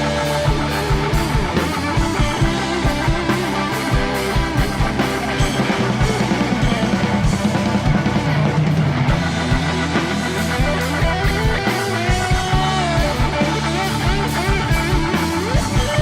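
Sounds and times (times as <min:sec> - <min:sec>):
instrumental rock music: 0:00.0 - 0:16.0.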